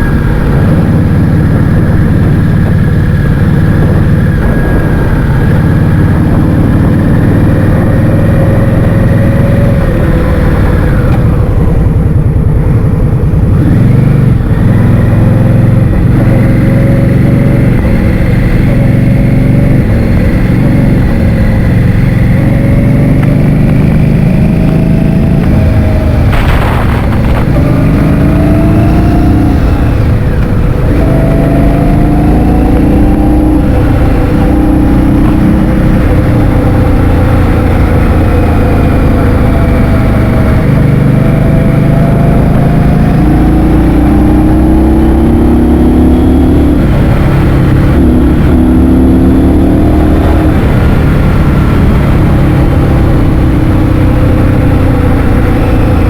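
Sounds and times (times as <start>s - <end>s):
wind buffeting microphone: 0.0s - 36.9s.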